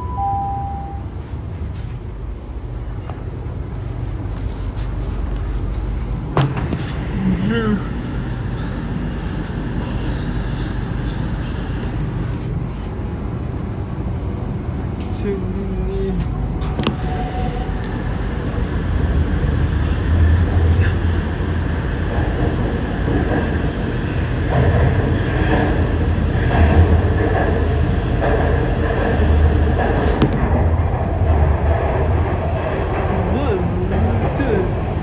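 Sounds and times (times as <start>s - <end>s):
faint high whine: 0.0s - 1.2s
train wheels rumbling on track: 0.0s - 35.0s.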